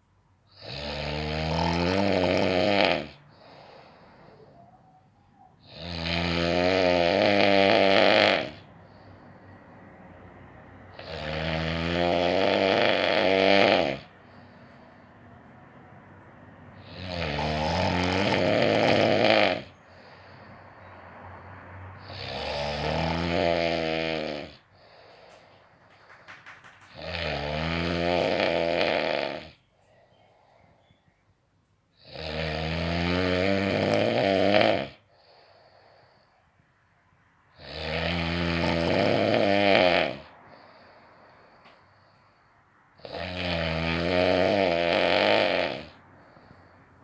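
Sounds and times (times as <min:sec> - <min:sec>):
person snoring: 0:00.5 - 0:09.8, 0:10.9 - 0:15.1, 0:16.8 - 0:29.7, 0:32.0 - 0:36.3, 0:37.5 - 0:42.4, 0:43.0 - 0:47.0
quiet breathing: 0:03.2 - 0:05.8, 0:08.4 - 0:11.0, 0:14.0 - 0:17.1, 0:19.7 - 0:22.3, 0:24.6 - 0:27.0, 0:29.6 - 0:32.0, 0:35.0 - 0:37.6, 0:40.2 - 0:43.0, 0:45.8 - 0:47.0.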